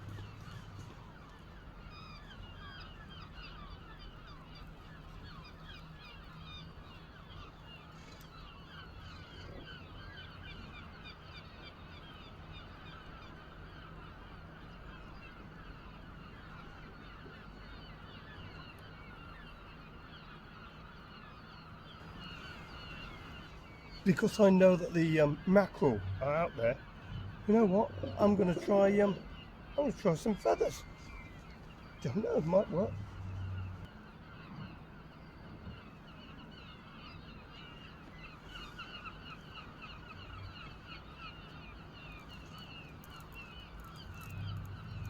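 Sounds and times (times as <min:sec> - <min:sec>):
flock of birds chirping: 0:00.0 - 0:45.0
low steady hum: 0:22.0 - 0:35.8, 0:38.0 - 0:45.0.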